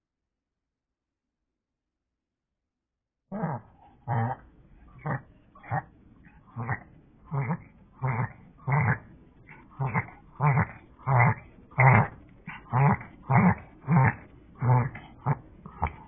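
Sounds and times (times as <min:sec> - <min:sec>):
dog breathing rapidly: 0:03.7 - 0:16.0.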